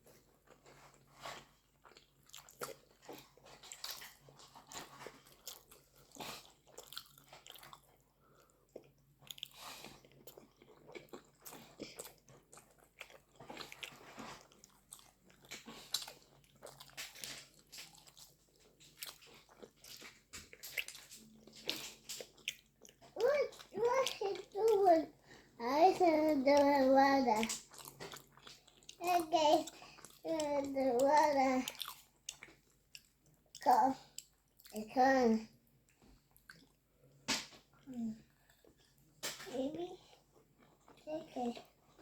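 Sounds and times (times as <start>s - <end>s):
person crunching and chewing: 0.4s - 24.9s, 27.4s - 34.8s.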